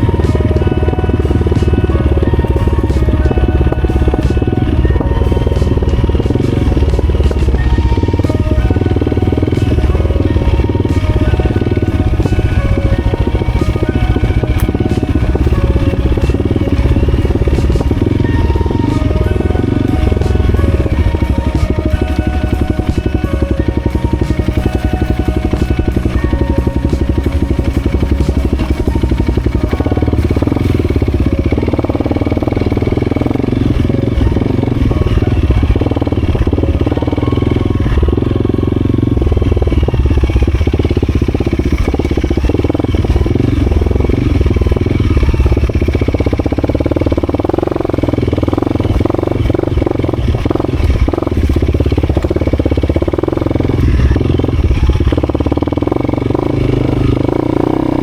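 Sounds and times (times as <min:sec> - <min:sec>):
clatter: 0:00.0 - 0:58.0
vehicle engine rumbling under load: 0:00.0 - 0:58.0.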